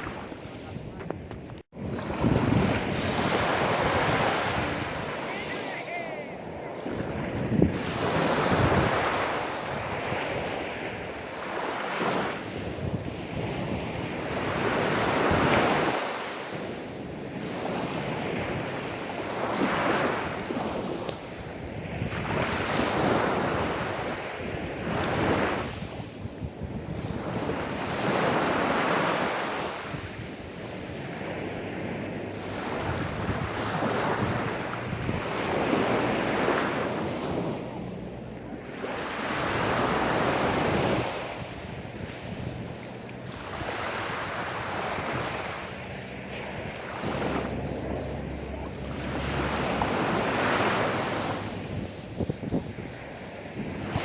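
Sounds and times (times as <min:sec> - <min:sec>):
small waves washing onto sand: 0:00.0 - 0:54.0.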